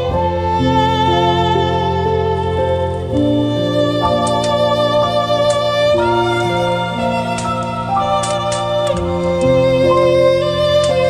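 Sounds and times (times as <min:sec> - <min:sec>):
calm instrumental music: 0:00.0 - 0:11.0
brief clicks: 0:07.4 - 0:09.1.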